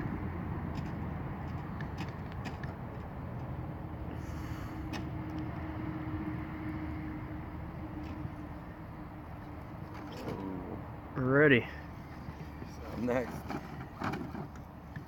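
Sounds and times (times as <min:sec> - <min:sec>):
clicks and knocks on wood and rock: 0:00.7 - 0:03.5.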